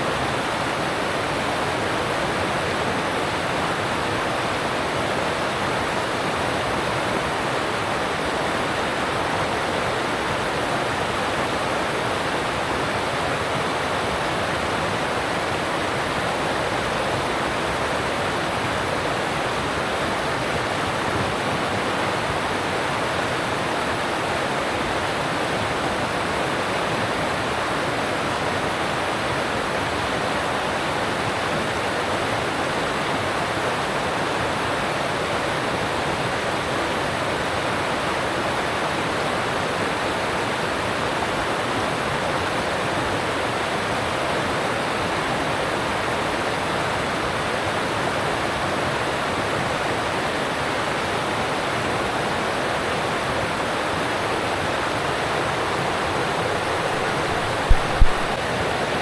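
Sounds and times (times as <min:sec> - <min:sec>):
stream rushing: 0:00.0 - 0:59.0
low thump: 0:57.2 - 0:58.4.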